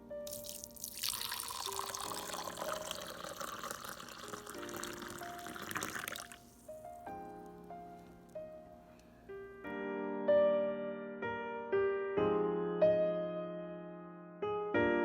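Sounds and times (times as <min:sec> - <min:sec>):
soft piano music: 0:00.0 - 0:15.0
water running into a vessel: 0:00.3 - 0:06.8.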